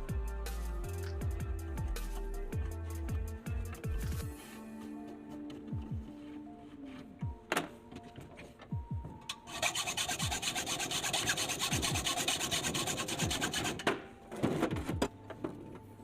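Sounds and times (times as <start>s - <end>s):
background music with bass thump: 0.0s - 16.0s
tool scraping rasping strokes: 9.4s - 13.9s.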